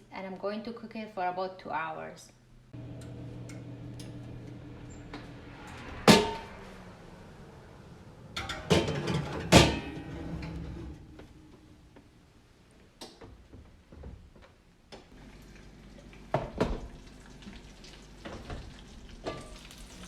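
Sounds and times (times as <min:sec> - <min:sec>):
oven humming: 0:02.7 - 0:13.1
loud clunk: 0:05.1 - 0:06.7, 0:08.4 - 0:11.6
oven door and rack clanking: 0:08.4 - 0:11.6.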